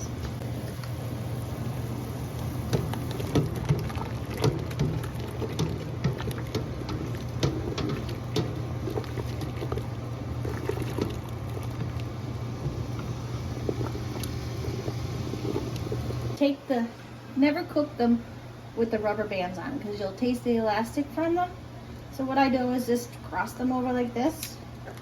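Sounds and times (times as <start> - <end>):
water boiling and bubbling: 0.0 - 16.6
steady low hum: 0.0 - 25.0.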